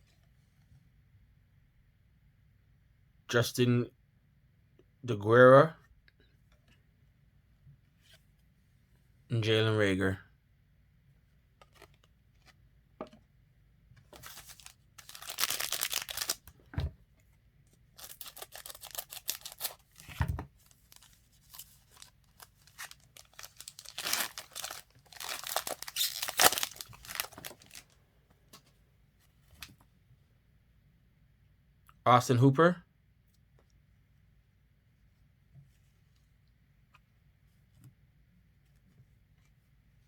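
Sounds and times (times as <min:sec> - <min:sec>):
wrapper tearing and crinkling: 0:14.2 - 0:16.5, 0:18.0 - 0:20.0, 0:20.6 - 0:27.9.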